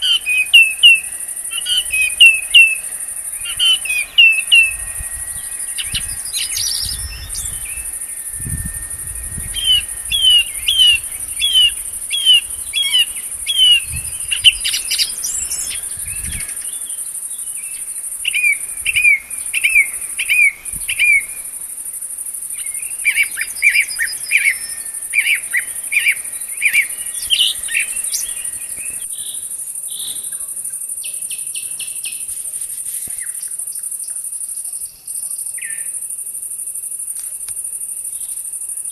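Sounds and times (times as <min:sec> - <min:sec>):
songbird whistling: 0:00.0 - 0:21.6, 0:22.5 - 0:30.3
insect chirring: 0:00.0 - 0:38.9.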